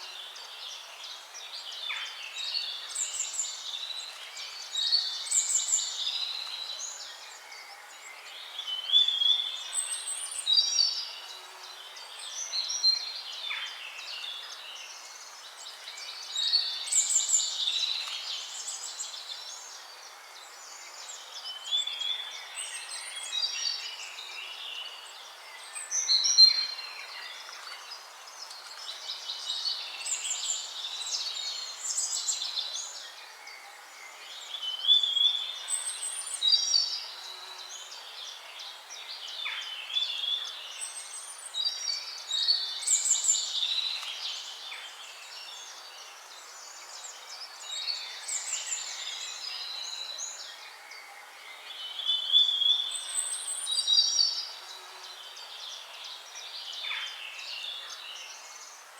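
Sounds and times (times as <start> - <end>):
songbirds chirping and trilling: 0.0 - 58.9
steady background hiss: 9.6 - 58.9.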